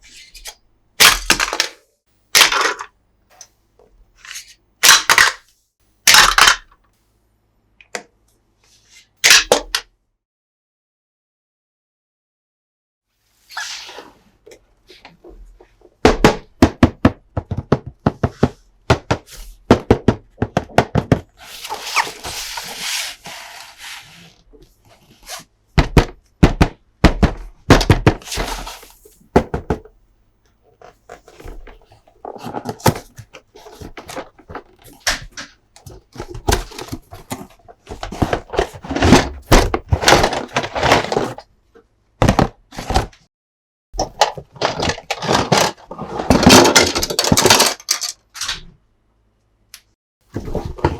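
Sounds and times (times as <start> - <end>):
plastic toy pieces clicking and knocking: 1.0 - 1.8, 2.4 - 2.9, 4.8 - 5.4, 6.1 - 6.8, 9.2 - 9.8, 44.2 - 48.5.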